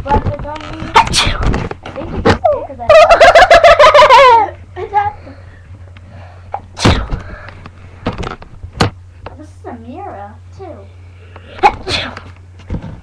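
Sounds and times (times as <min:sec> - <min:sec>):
person sneezing: 0:01.0 - 0:01.6, 0:06.8 - 0:07.2, 0:11.5 - 0:12.3.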